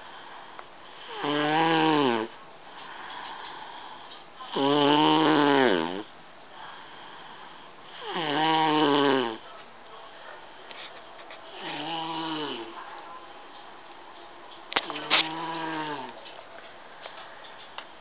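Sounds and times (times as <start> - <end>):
quiet breathing: 0.0 - 1.2, 2.3 - 4.5, 6.0 - 8.1, 9.4 - 12.8, 14.7 - 18.0
child snoring loudly: 0.9 - 2.4, 3.6 - 6.1, 7.8 - 9.4, 11.5 - 12.8, 14.9 - 16.2.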